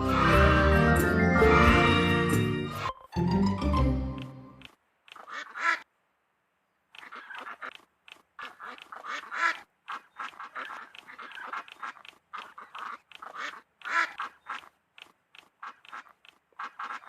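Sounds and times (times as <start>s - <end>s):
ducks quacking: 0.0s - 3.1s, 5.1s - 5.9s, 7.0s - 14.8s, 15.4s - 17.0s.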